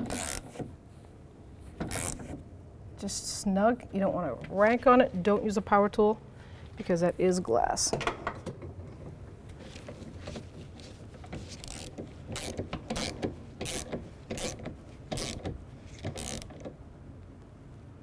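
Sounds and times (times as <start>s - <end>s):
hand ratchet clicking: 0.0s - 0.6s, 1.9s - 2.3s, 11.6s - 16.7s.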